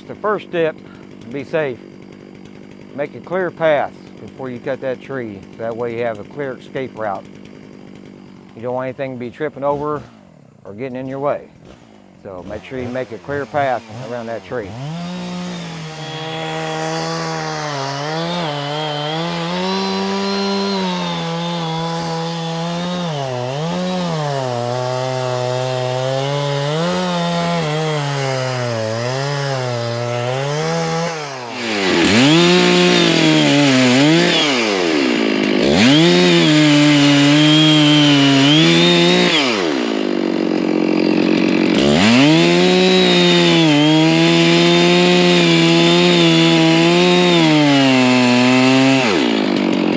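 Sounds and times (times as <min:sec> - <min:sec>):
chainsaw cutting wood: 0:00.0 - 0:49.9.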